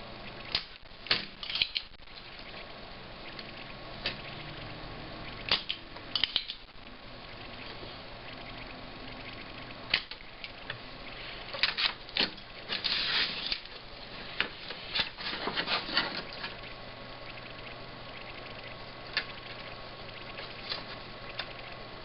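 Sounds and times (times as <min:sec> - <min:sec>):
hand tools clicking on circuit board: 0:05.5 - 0:06.7.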